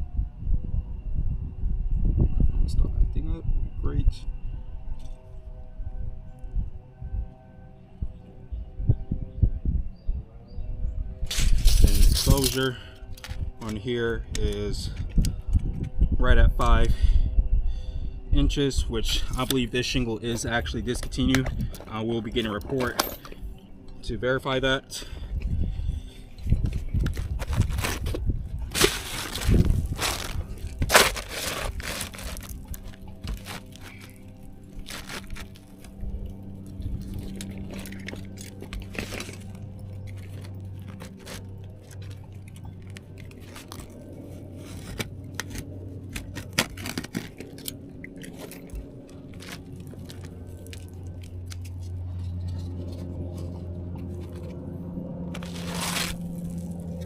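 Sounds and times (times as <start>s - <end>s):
steady low hum: 0.0s - 57.0s
shingles crunching and scraping: 26.6s - 54.6s, 55.2s - 57.0s.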